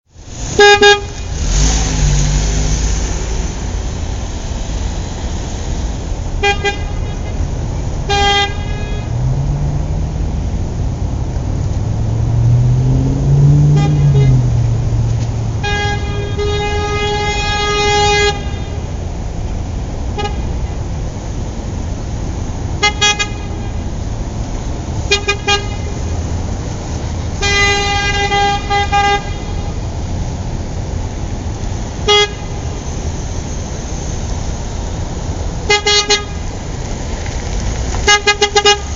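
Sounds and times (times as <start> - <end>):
traffic hiss: 0.2 - 12.2, 12.8 - 38.9
car horn honking: 0.5 - 1.6, 6.4 - 9.3, 13.6 - 14.8, 15.5 - 18.9, 20.2 - 20.8, 22.8 - 23.9, 25.0 - 26.1, 27.4 - 29.8, 32.0 - 32.8, 35.7 - 36.4, 38.0 - 38.9.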